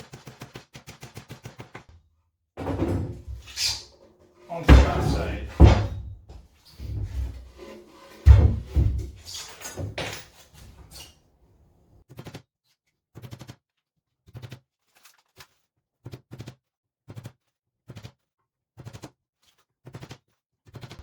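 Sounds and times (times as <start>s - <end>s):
wood being shifted: 2.6s - 3.8s, 4.4s - 11.1s.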